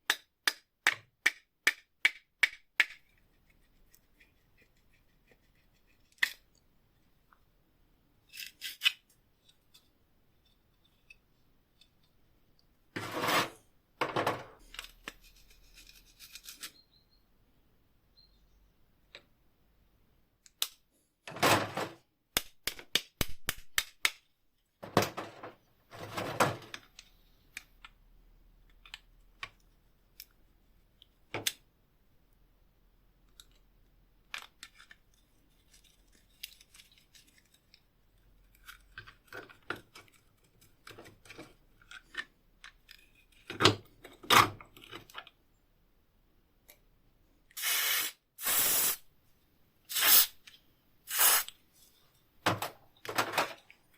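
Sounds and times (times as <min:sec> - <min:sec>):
metal scraping: 0:13.0 - 0:13.6
burst of hiss: 0:47.6 - 0:49.0, 0:49.9 - 0:50.4, 0:51.1 - 0:51.5.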